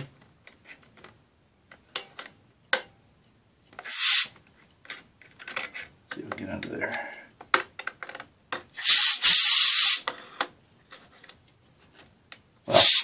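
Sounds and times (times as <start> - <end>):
compressed air hissing: 3.8 - 4.4, 8.8 - 10.1, 12.7 - 13.0.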